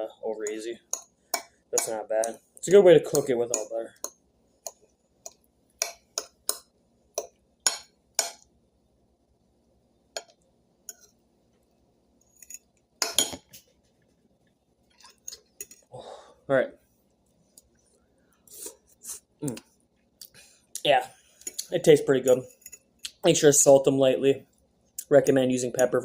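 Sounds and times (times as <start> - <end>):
cutlery clinking on a dish: 12.4 - 13.6.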